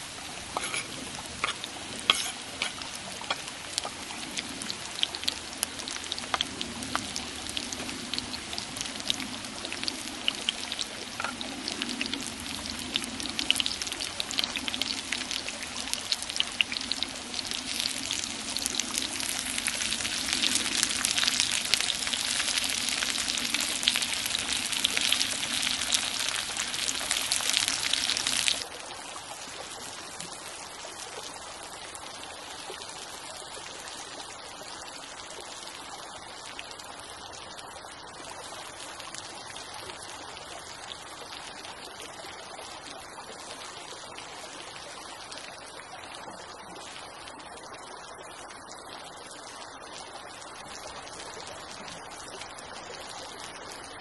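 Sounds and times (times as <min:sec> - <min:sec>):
food sizzling in a pan: 0:00.4 - 0:04.0, 0:17.3 - 0:28.6.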